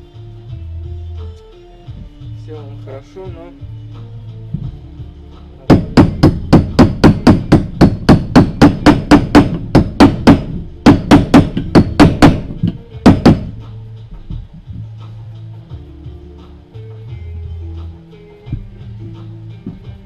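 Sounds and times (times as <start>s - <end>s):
hammer tapping on metal: 5.7s - 13.6s.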